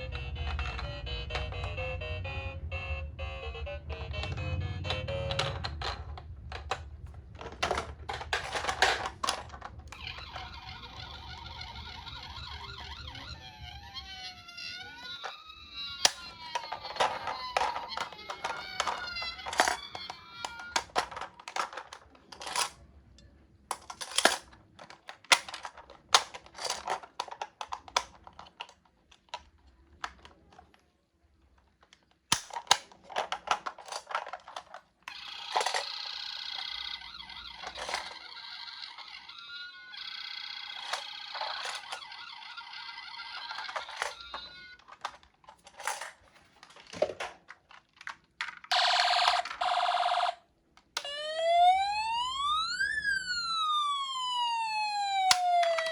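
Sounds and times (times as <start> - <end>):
plastic toy clicks and taps: 16.0 - 30.7, 31.8 - 35.9, 37.4 - 38.3, 40.8 - 42.2, 43.4 - 49.6, 55.2 - 55.9.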